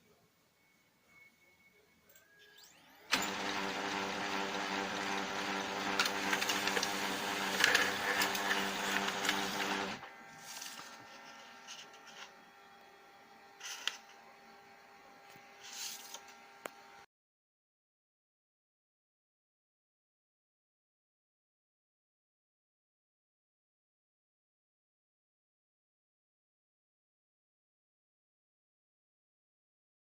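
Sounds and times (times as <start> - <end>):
printer motor hum with grinding: 2.7 - 17.0
quiet printer whir: 2.7 - 17.0.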